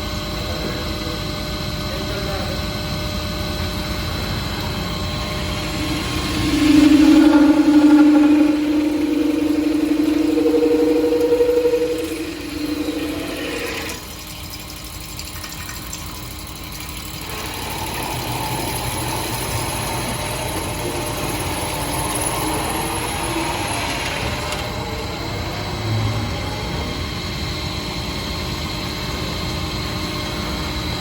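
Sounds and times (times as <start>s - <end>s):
mechanical whir: 3.6s - 27.5s
machine motor hum: 4.0s - 14.5s
held machine tones: 4.7s - 14.9s.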